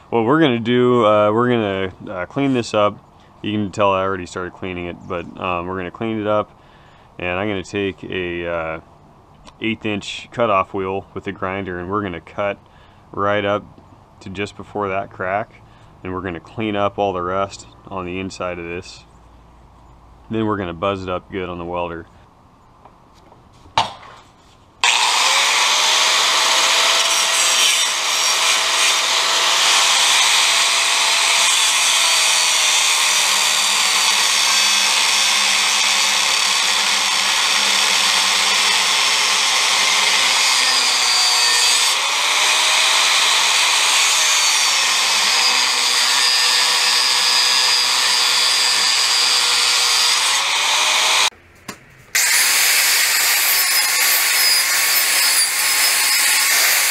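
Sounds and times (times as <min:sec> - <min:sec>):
angle grinder cutting steel: 0:24.8 - 0:51.3, 0:52.2 - 0:56.9.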